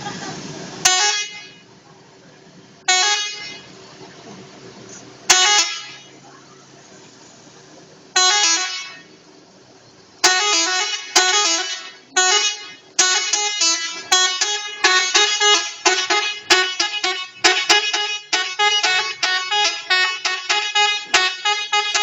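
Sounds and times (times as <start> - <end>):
musical bus horn blasts: 0.8 - 1.6, 2.9 - 3.7, 5.3 - 6.2, 8.2 - 9.1, 10.2 - 22.0.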